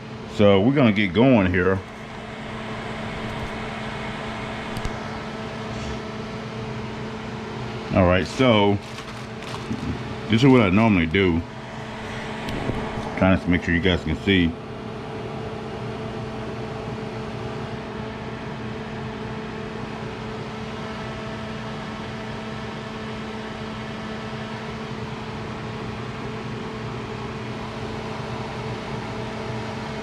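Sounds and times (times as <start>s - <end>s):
fan whooshing: 0.0s - 14.6s.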